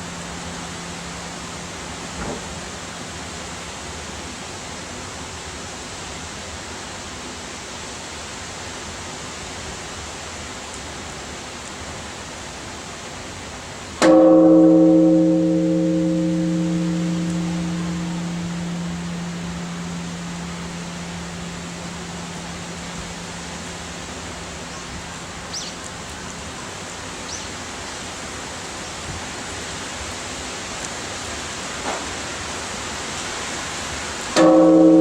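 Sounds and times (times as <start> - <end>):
large temple bell ringing: 0.0 - 4.1, 14.0 - 26.1, 34.4 - 35.0
steady background hiss: 0.0 - 35.0.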